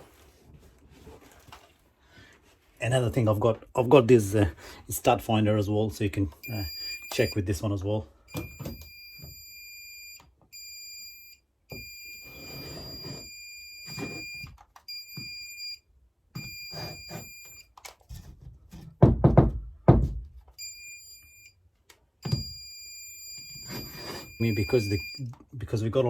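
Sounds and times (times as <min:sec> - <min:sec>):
stud finder beeping: 0:06.4 - 0:07.5, 0:08.3 - 0:15.8, 0:16.4 - 0:17.8, 0:22.2 - 0:25.4.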